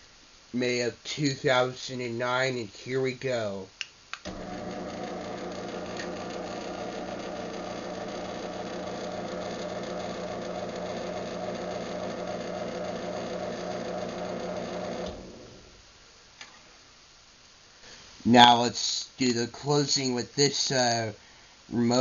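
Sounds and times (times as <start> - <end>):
motor starting click: 4.2 - 15.7
garage door opener motor whirring: 4.3 - 15.8.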